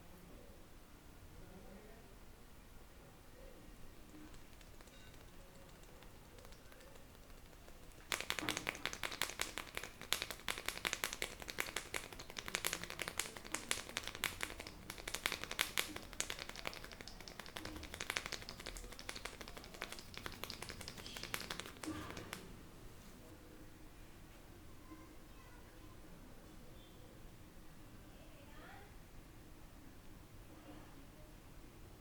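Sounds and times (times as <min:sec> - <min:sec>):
hands tapping on head: 0:04.1 - 0:22.5.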